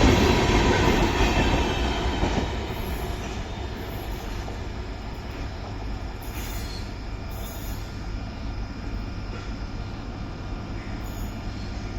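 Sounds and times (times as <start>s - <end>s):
train wheels rumbling on rail: 0.0s - 11.9s.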